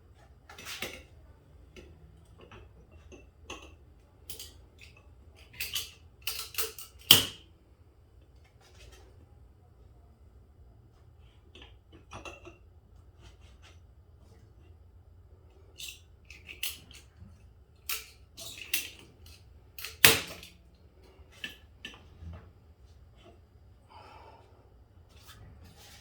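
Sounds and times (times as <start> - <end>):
metallic clicks and knocks of tools: 4.3 - 7.4, 17.8 - 20.5.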